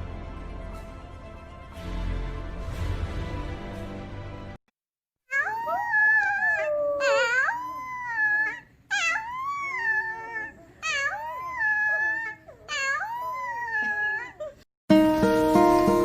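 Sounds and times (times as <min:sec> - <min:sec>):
dog howling: 0:05.3 - 0:14.6.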